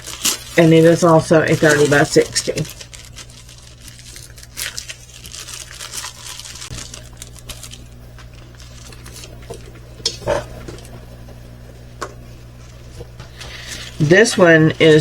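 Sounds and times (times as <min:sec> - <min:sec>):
plastic packaging crinkling: 0:00.0 - 0:10.9, 0:12.6 - 0:15.0.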